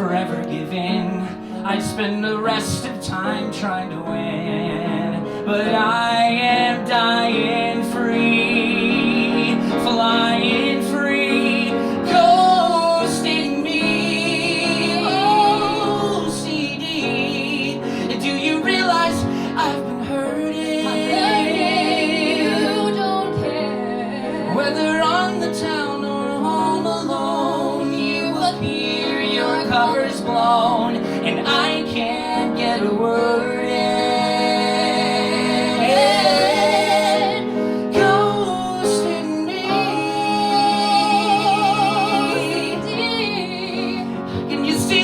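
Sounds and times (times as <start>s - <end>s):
woman singing with vibrato: 12.0s - 45.0s.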